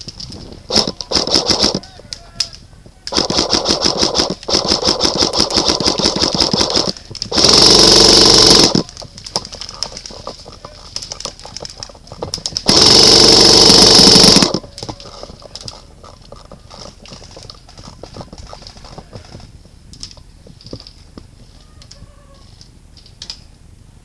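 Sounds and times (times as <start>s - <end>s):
airsoft rifle full-auto burst: 0.7s - 1.8s, 3.1s - 8.9s, 12.6s - 14.6s.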